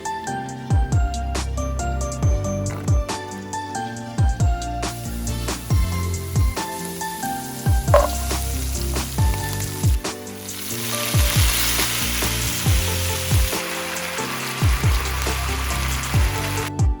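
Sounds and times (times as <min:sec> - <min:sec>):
background music with beat: 0:00.0 - 0:17.0
food sizzling in a pan: 0:04.8 - 0:16.7.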